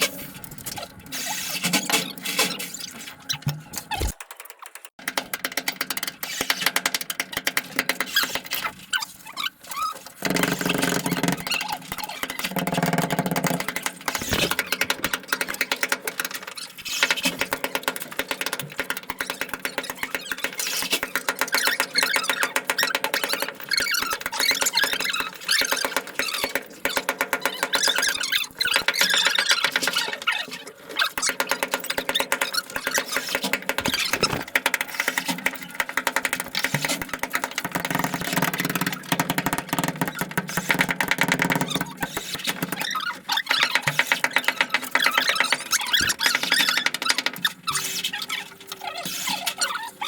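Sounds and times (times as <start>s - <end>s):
clicks and knocks: 33.7s - 34.5s.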